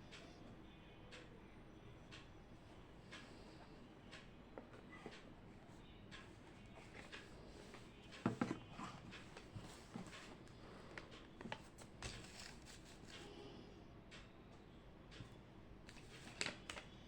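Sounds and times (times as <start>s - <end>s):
paper rustling: 6.8s - 13.3s, 15.9s - 16.9s.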